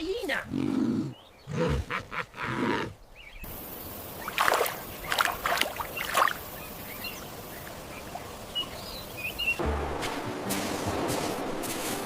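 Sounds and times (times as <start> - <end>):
steady background hiss: 3.1 - 12.0.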